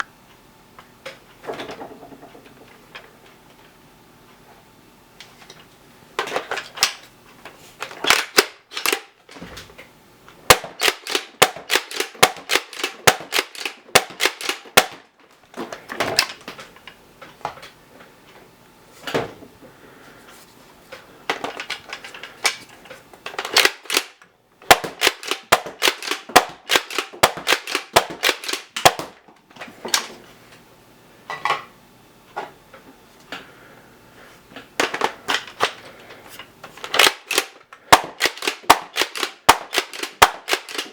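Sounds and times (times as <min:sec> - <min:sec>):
toy dart blaster firing: 0:10.5 - 0:15.0, 0:23.5 - 0:29.2, 0:37.0 - 0:40.9.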